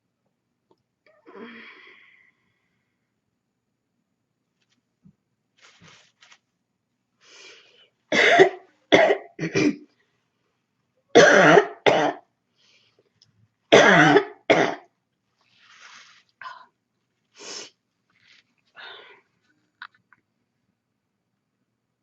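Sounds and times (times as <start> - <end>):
person barking cough: 8.2 - 9.8, 11.2 - 12.2, 13.8 - 14.8.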